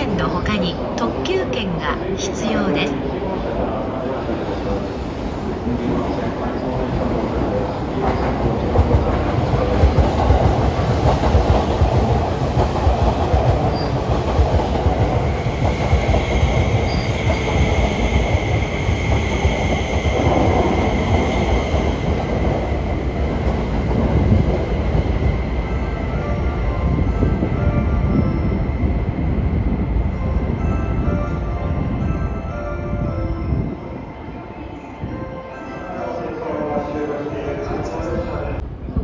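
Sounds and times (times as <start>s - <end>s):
train wheels rumbling on rails: 4.2s - 32.4s.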